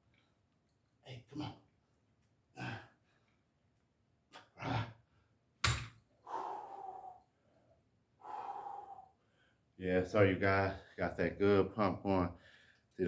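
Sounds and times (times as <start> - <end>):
man breathing heavily: 6.2 - 7.6, 8.2 - 9.6, 12.4 - 12.9.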